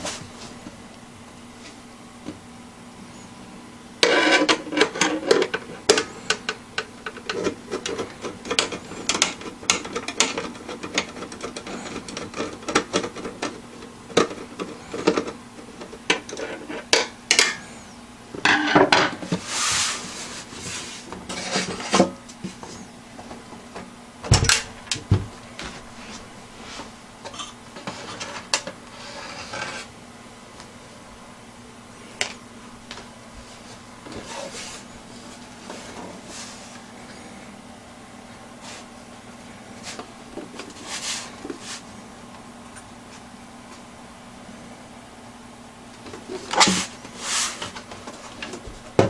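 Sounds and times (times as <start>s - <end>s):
clicks taps and scrapes of parts: 4.0s - 17.7s
longer rubbing scrape: 19.4s - 21.8s, 28.9s - 29.9s
dull thumps: 24.2s - 25.8s.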